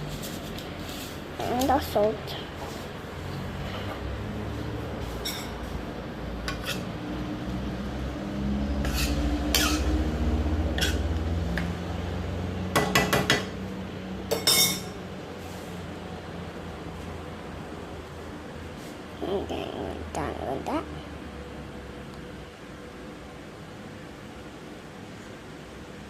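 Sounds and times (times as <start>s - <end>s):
utensil scraping frying pan: 5.0s - 5.8s, 6.4s - 7.0s, 8.8s - 10.1s, 10.7s - 11.2s.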